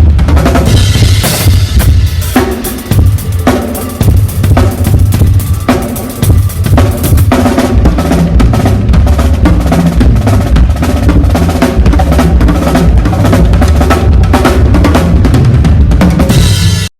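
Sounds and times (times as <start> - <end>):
drum kit playing: 0.0 - 16.9
sustained low notes: 0.7 - 9.1.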